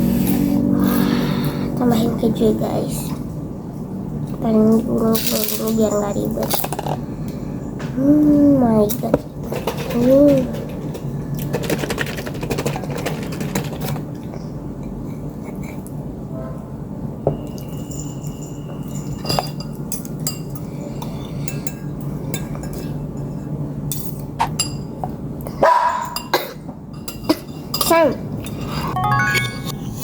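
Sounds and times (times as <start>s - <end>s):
steady low hum: 0.0s - 9.8s
utensils clinking against bowl: 4.7s - 7.0s, 17.3s - 25.2s, 26.0s - 29.8s.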